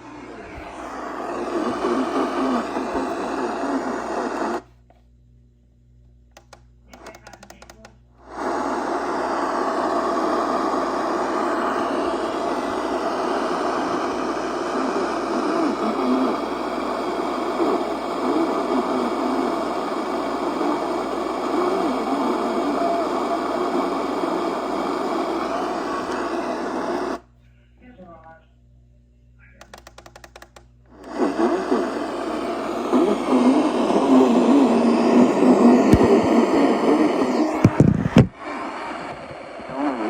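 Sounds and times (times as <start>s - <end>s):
radio static hiss: 0.0s - 4.7s, 6.9s - 27.2s, 29.5s - 40.0s.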